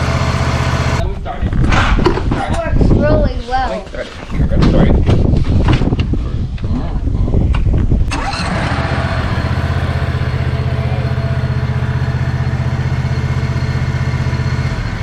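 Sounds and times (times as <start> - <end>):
lawn mower engine idling: 0.0 - 1.0, 8.1 - 15.0.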